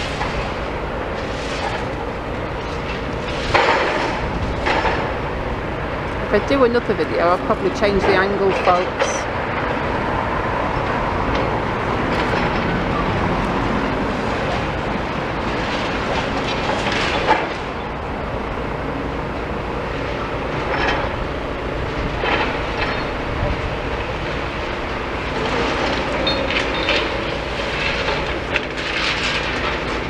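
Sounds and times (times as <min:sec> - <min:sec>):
diesel engine running: 0:00.0 - 0:30.0
rumble and clatter of machinery: 0:00.0 - 0:30.0
rubble and metal knocks: 0:01.2 - 0:05.4.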